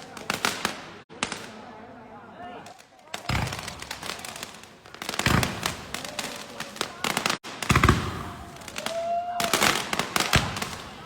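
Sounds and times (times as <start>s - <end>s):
fireworks crackling: 0.0s - 11.0s
heavy firework bangs: 3.1s - 11.0s.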